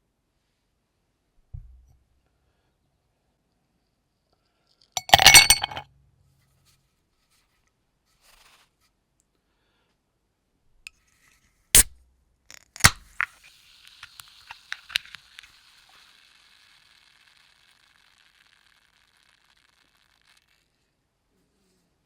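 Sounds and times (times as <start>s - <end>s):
ice cubes clinking into glass: 5.0s - 5.8s
soda can pull tab cracking open: 12.5s - 20.7s
soda fizzing: 13.1s - 20.7s.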